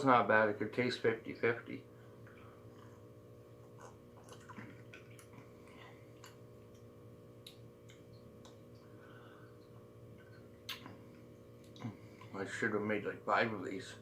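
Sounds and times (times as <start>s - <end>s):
low hum: 0.0s - 14.0s
person sipping and swallowing: 2.2s - 6.4s, 7.9s - 12.4s
mouth clicks and smacks: 3.6s - 8.8s, 9.6s - 11.0s, 11.6s - 12.3s.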